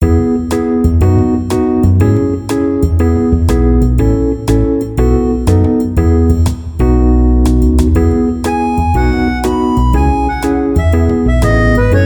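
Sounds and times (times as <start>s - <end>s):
piano melody with low bass: 0.0s - 12.0s.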